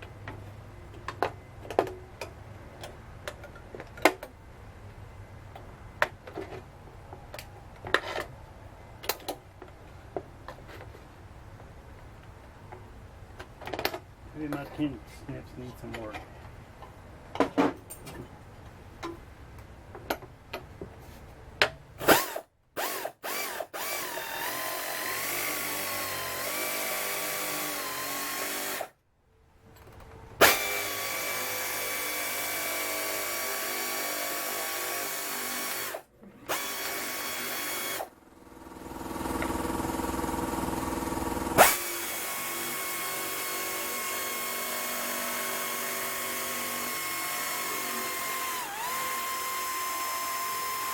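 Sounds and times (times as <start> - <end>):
air shears cutting sheet metal: 30.4 - 38.1, 41.2 - 44.6.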